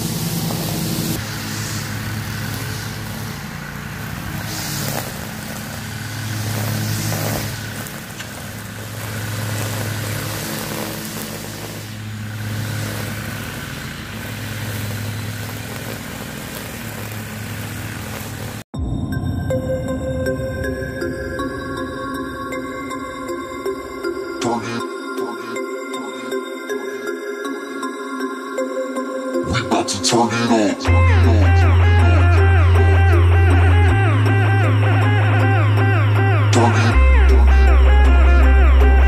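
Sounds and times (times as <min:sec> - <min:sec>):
constant hiss: 0:00.0 - 0:18.7
engine running: 0:00.0 - 0:39.0.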